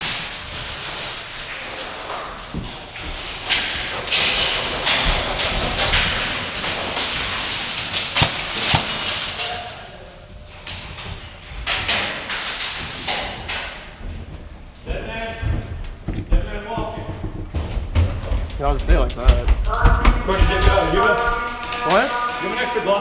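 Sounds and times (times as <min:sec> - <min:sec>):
irregular thumps: 0:10.3 - 0:22.3.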